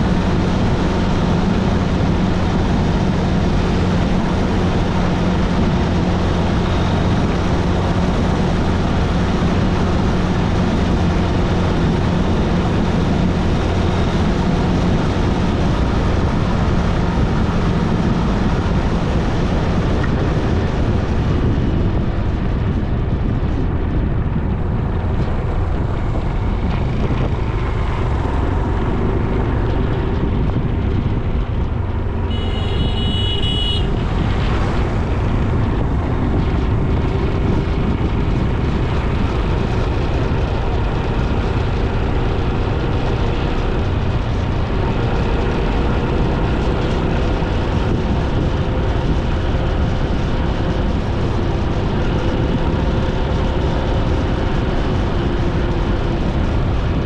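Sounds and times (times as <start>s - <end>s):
motorcycle engine drone: 0.0s - 57.0s
wind and road noise: 0.0s - 57.0s
short high horn tone: 32.3s - 34.0s.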